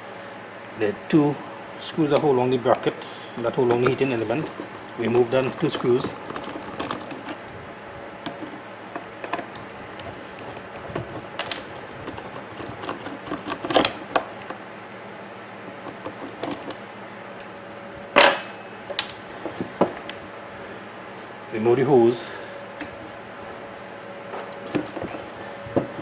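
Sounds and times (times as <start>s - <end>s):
screwdriver clicks and scrapes: 8.3s - 14.2s
sharp clink: 18.2s - 19.0s.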